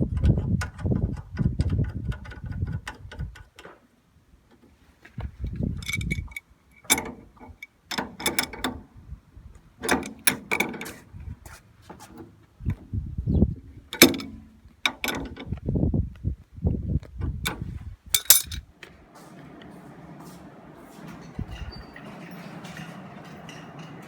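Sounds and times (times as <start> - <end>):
hand tools clicking and rattling: 5.8 - 8.8, 9.8 - 11.0, 14.0 - 15.4, 18.2 - 18.6.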